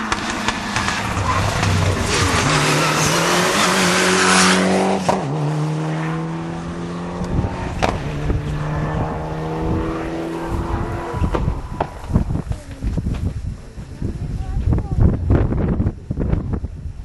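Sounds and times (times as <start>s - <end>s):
rally car engine at full throttle: 0.0s - 13.2s
tyre and road noise: 0.0s - 16.5s
exhaust pops: 7.2s - 8.6s, 11.2s - 13.4s.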